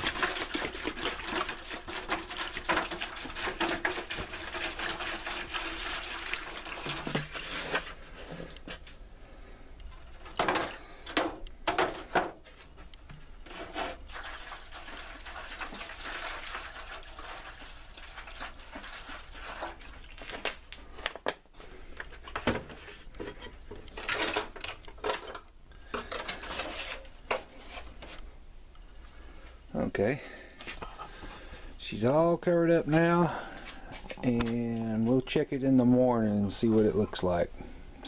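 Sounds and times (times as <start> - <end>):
liquid pouring into a pan: 0.0 - 8.0, 14.0 - 20.6.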